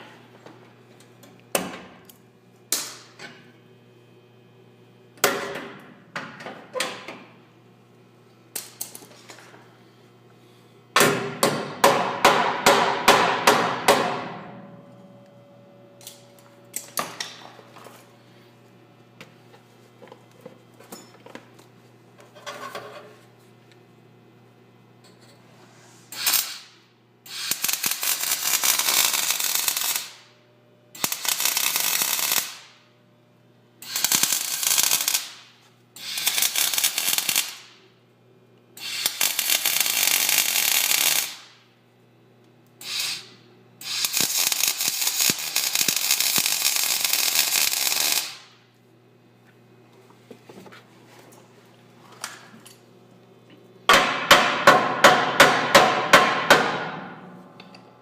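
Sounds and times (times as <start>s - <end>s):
power tool on sheet metal: 26.2s - 26.7s, 27.3s - 30.2s, 31.0s - 32.7s, 33.8s - 35.4s, 36.0s - 37.7s, 38.8s - 41.4s, 42.8s - 48.4s.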